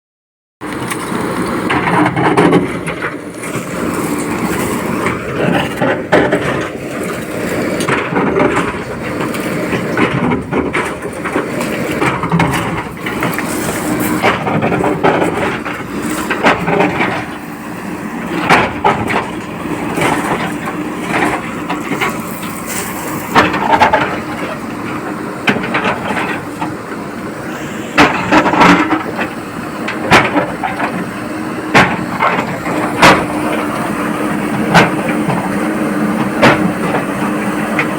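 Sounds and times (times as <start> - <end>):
diesel engine running: 0.6 - 37.9
sharp metal knocks and clanks: 3.9 - 17.4, 18.3 - 27.0, 27.9 - 31.1, 31.7 - 33.9, 36.2 - 37.2.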